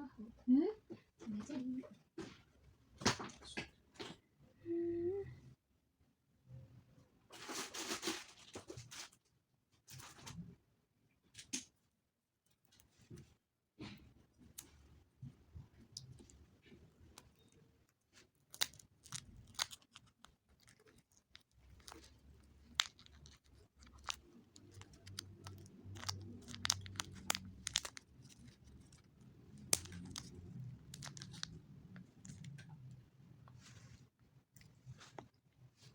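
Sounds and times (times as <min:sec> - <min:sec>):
plastic wrapping crinkling and tearing: 0:18.5 - 0:31.6.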